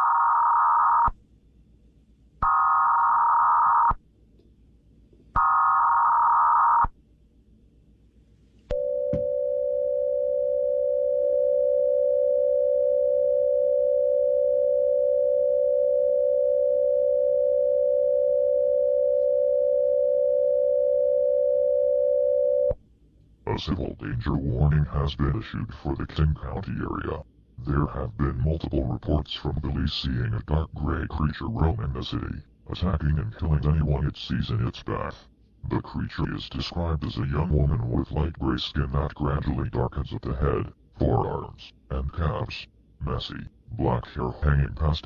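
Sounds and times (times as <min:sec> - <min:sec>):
steady attention tone: 0:08.7 - 0:22.8.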